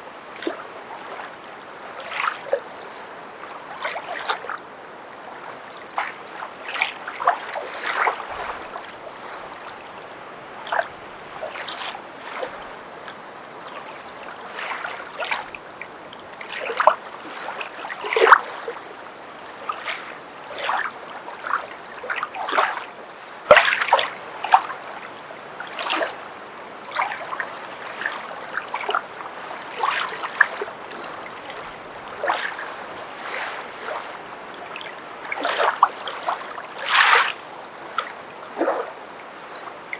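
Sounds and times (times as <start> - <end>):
footsteps splashing in water: 6.0 - 9.8, 26.9 - 34.2.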